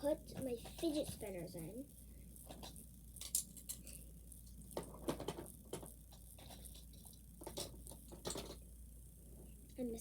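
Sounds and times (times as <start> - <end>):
fidget spinners clicking and knocking: 0.3 - 1.7.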